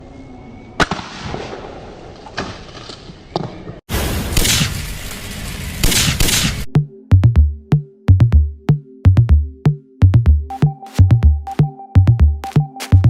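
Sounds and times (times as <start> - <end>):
air rifle shots: 0.8 - 1.6, 4.3 - 4.9, 5.8 - 6.7.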